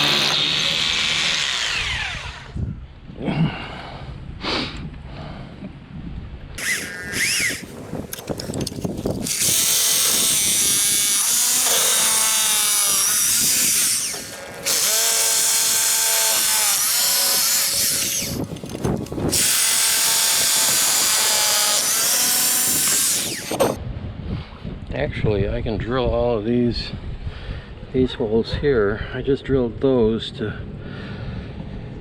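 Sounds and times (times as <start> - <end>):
power drill running: 0.0 - 2.6, 6.6 - 23.8.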